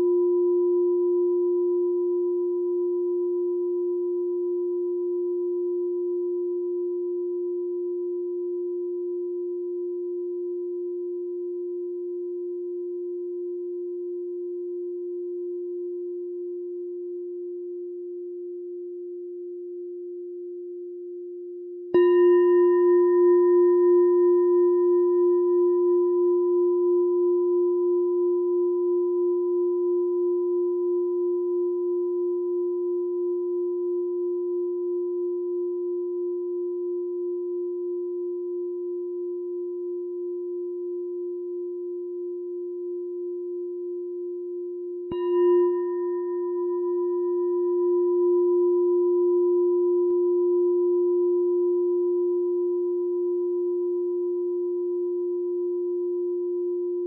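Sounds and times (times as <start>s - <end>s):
meditation bell ringing: 21.9s - 57.0s.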